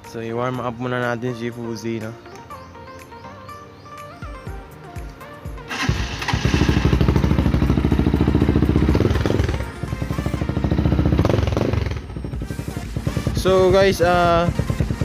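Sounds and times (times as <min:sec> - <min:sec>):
loud motorcycle engine running: 0:05.7 - 0:15.0.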